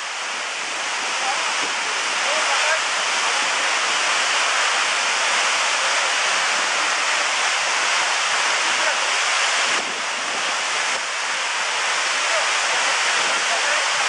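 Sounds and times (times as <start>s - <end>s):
waterfall rushing: 0.0s - 14.0s.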